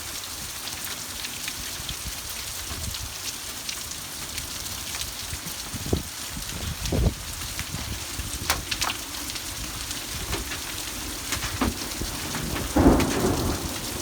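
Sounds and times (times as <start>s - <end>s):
rain falling: 0.0s - 14.0s
raindrops hitting close by: 0.0s - 14.0s
thunder: 8.4s - 14.0s.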